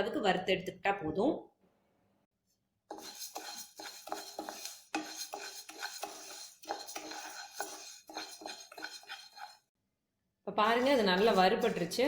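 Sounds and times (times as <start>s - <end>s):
spatula scraping a pan: 2.9s - 9.7s, 10.6s - 12.0s.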